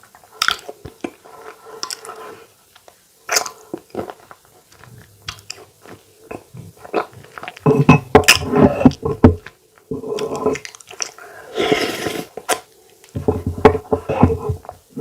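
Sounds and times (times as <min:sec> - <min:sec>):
chewing food: 0:00.2 - 0:11.4.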